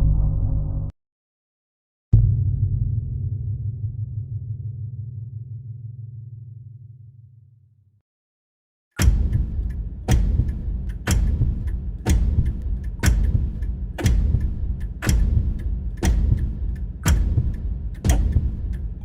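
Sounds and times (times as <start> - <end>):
deep heartbeat thuds: 9.0 - 19.0
faint ticking: 9.0 - 19.0.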